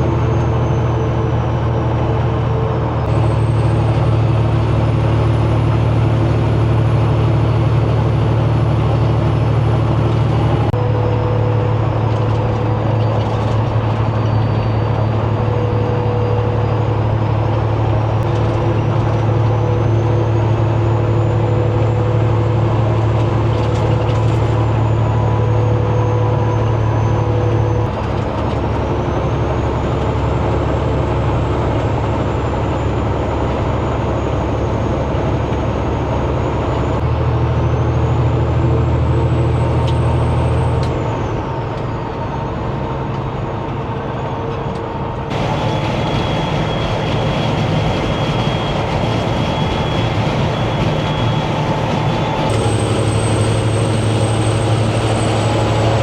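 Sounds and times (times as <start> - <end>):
diesel truck engine drone: 0.0 - 56.0
turbo whistle: 45.3 - 56.0.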